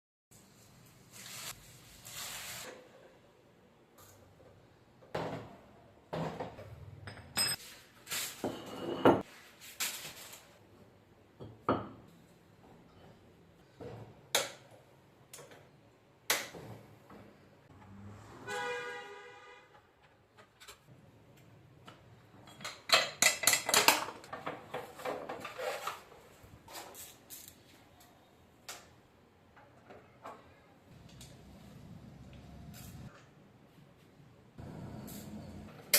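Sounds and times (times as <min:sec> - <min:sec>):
tools and metal parts clinking: 0:06.6 - 0:07.8, 0:22.3 - 0:26.0.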